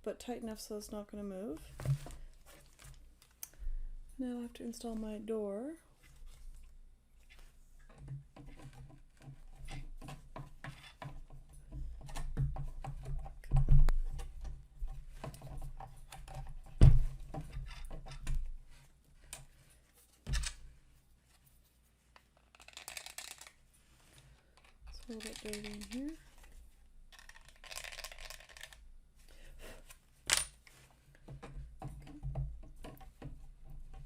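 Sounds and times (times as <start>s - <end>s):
plastic parts clicking and scraping: 22.1s - 28.9s.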